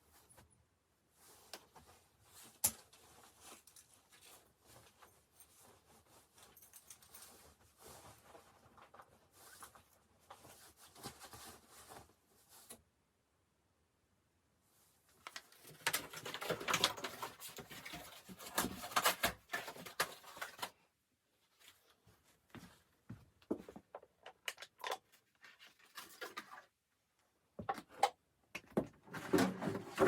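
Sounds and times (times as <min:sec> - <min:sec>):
rustling and scraping with clicks: 0:01.2 - 0:12.8, 0:15.1 - 0:20.9, 0:23.5 - 0:26.9, 0:27.6 - 0:30.0.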